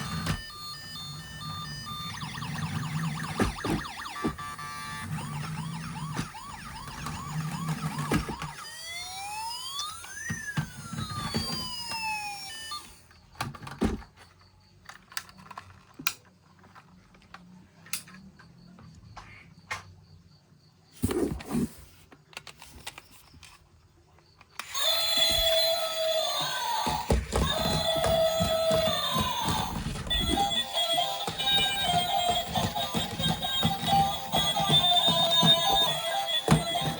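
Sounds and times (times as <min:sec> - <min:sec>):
toy electronic siren: 0:00.0 - 0:13.4, 0:24.6 - 0:36.9.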